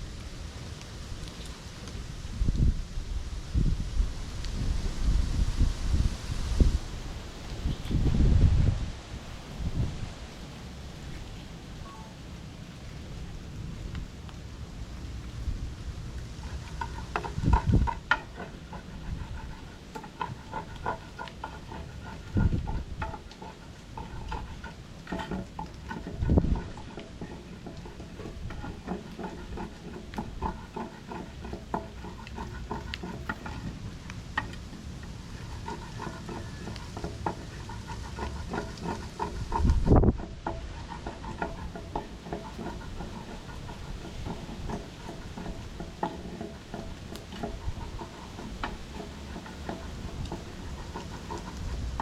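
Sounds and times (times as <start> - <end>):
stirring and scraping in pot: 16.0 - 52.0.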